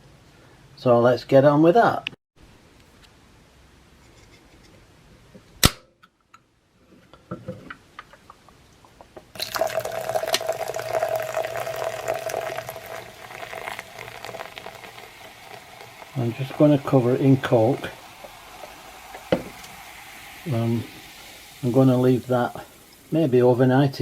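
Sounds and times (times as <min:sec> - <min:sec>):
sharp snap: 0:05.6 - 0:06.0
soda pouring and fizzing: 0:09.3 - 0:24.0.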